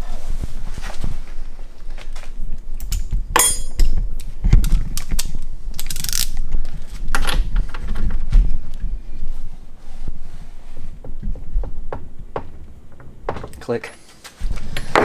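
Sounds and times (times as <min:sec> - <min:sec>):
ringing metal clank: 0:03.4 - 0:03.9
metal knocks and clicks: 0:11.0 - 0:13.9.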